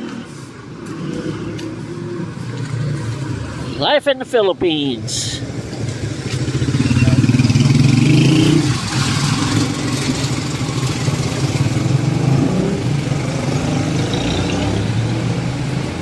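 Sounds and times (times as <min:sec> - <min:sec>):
vehicle engine droning: 0:00.0 - 0:16.0.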